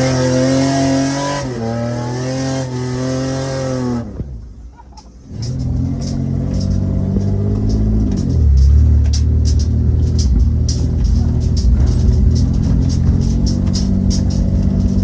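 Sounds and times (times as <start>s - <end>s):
car engine revving: 0.0s - 4.5s, 5.2s - 15.0s.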